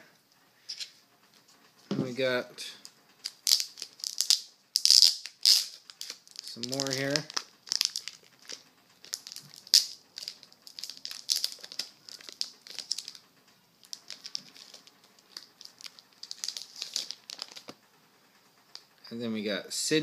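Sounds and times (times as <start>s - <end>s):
plastic crinkling and rustling: 3.2s - 17.8s.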